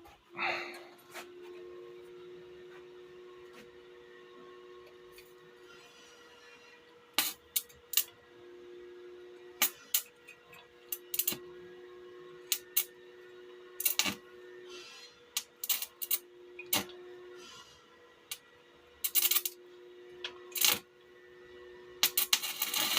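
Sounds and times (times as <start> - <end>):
faint steady hum: 0.0 - 22.9
small metal parts clinking: 10.9 - 11.4, 19.0 - 19.6.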